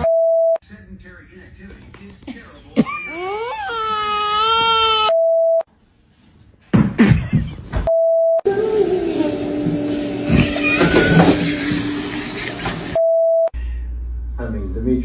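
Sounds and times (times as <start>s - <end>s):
wailing cry: 2.8s - 5.1s, 8.5s - 12.5s.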